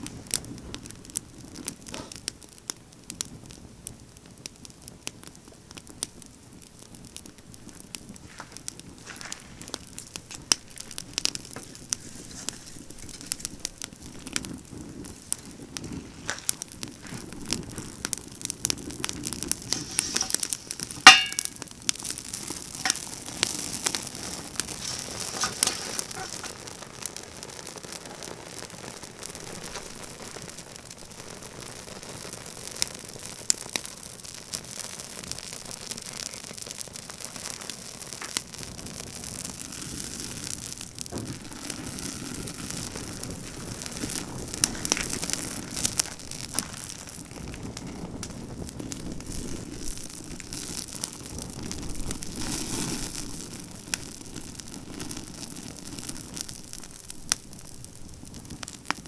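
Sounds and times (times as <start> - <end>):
campfire crackling and popping: 0.0 - 59.0
loud sharp pop: 19.7 - 21.6.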